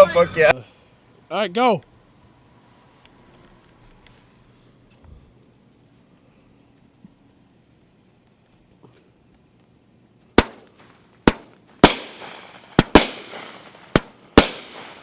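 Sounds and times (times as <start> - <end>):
fireworks bangs: 10.4 - 15.0.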